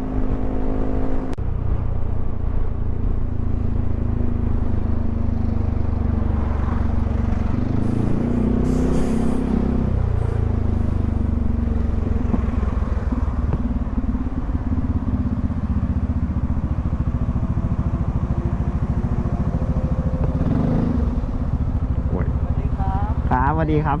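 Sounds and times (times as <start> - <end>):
scooter engine running: 9.4 - 24.0.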